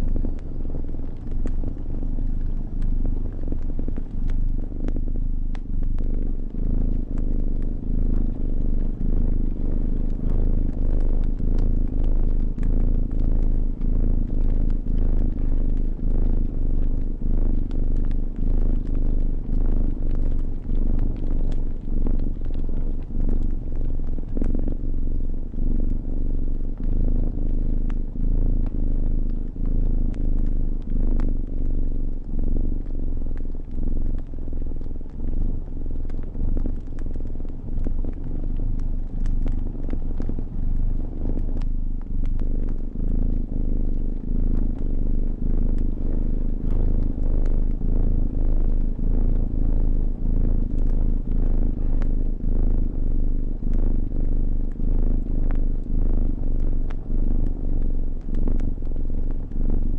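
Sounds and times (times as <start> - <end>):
cat purring: 0.0 - 59.9
wood fire crackling: 0.1 - 58.8.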